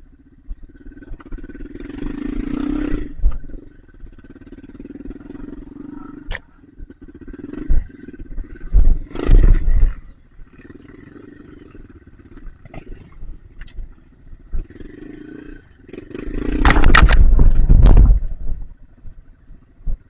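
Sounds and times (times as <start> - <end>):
muffled motorcycle engine revving: 0.0 - 20.0.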